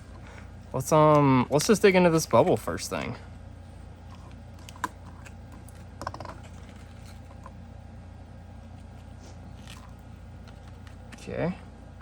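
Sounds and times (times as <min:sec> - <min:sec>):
steady low hum: 0:00.0 - 0:12.0
package rustling: 0:08.6 - 0:11.2.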